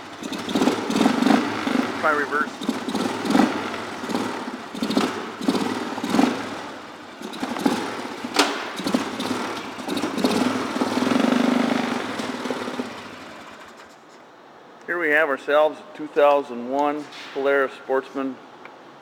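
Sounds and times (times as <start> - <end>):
atv engine running: 0.0 - 14.0.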